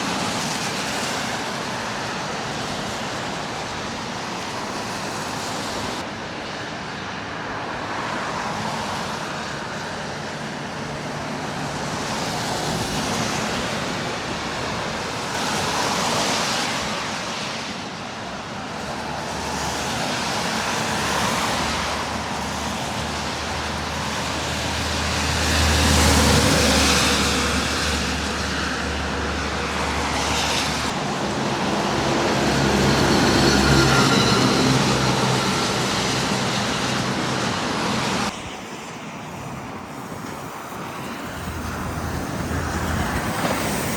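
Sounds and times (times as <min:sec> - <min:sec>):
heavy vehicle engine hum: 0:21.0 - 0:38.4.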